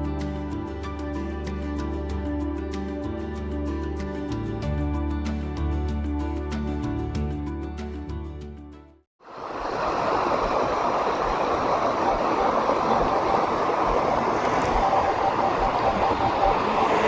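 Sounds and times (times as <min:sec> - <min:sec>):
background music: 0:00.0 - 0:09.0
waterfall and stream rushing: 0:09.2 - 0:17.0
faint steady hum: 0:09.3 - 0:17.0.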